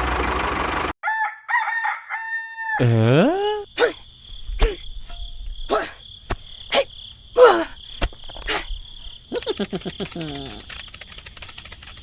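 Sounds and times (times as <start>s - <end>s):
crickets chirring: 2.1s - 12.0s.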